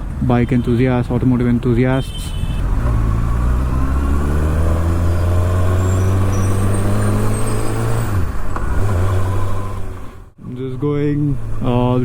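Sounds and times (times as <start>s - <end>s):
motorcycle engine at low revs: 2.6s - 10.4s.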